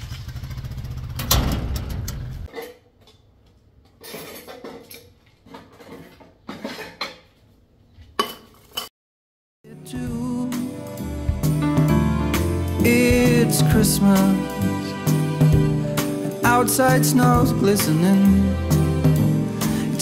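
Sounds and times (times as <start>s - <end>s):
dishes and utensils clattering: 2.5s - 3.3s, 3.9s - 7.5s, 8.1s - 8.9s.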